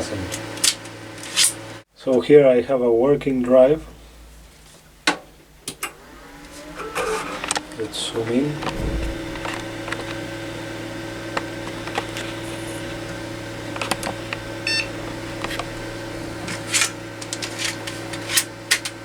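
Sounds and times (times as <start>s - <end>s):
desktop computer humming: 6.0s - 18.4s.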